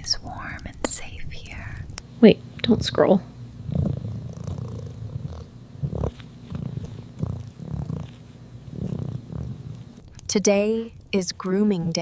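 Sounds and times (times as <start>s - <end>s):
cat purring: 3.6s - 12.0s.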